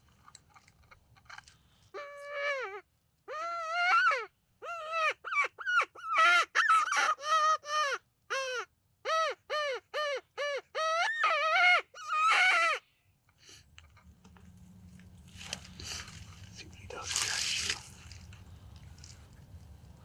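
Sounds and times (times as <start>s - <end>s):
coyote yips and howls: 2.0s - 12.8s.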